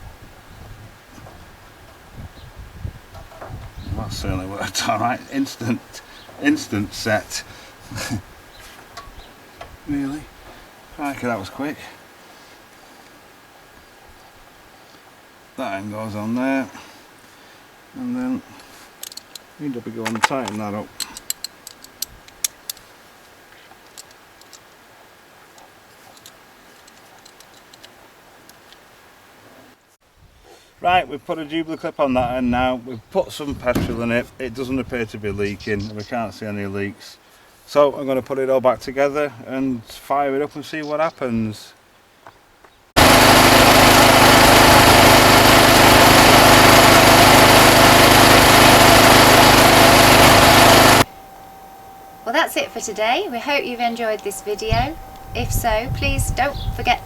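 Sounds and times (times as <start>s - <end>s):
generator engine running: 43.0s - 57.0s.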